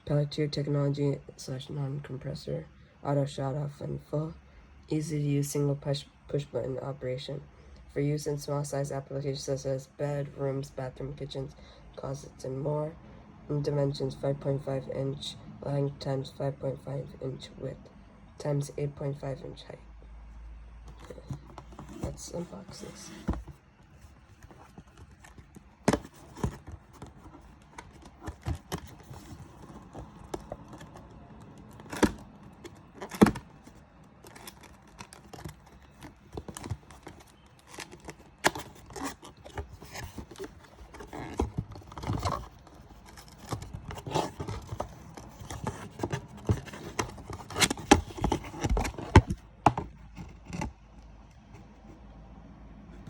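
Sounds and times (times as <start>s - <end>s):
packaging knocks and scrapes: 20.9s - 50.8s.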